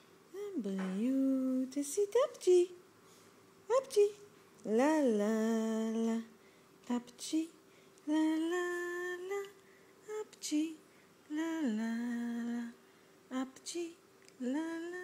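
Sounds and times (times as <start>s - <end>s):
person humming slow tune: 0.4s - 2.2s.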